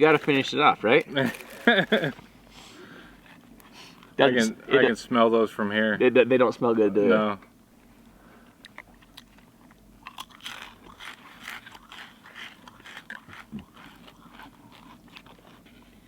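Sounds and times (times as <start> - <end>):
person crunching and chewing snack: 0.0 - 2.2, 8.5 - 16.0.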